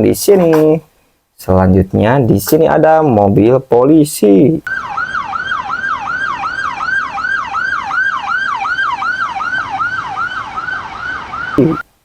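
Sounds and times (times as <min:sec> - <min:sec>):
toy electronic siren yelping: 0:04.7 - 0:11.8.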